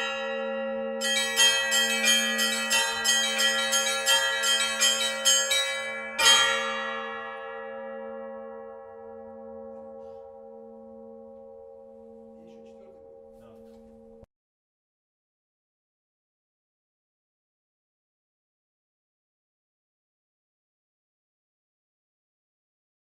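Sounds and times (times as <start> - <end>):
low throbbing bell hum: 0.0 - 14.3
small chiming bells: 0.0 - 14.3.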